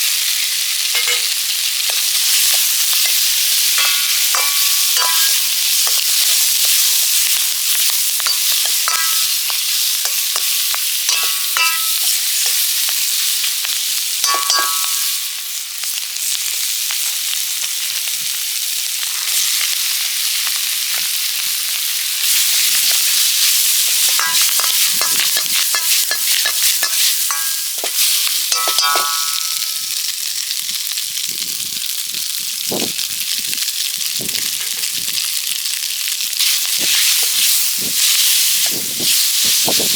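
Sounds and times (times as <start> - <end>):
food sizzling in a wok: 0.0 - 39.9
utensil clinking and scraping pan: 0.9 - 6.8, 8.2 - 12.7, 14.2 - 15.2, 23.8 - 29.8.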